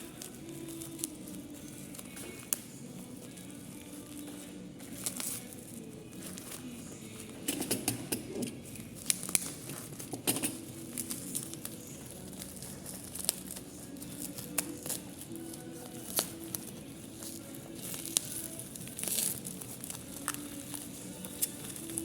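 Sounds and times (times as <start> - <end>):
packaging crinkling and rustling: 0.0 - 22.0.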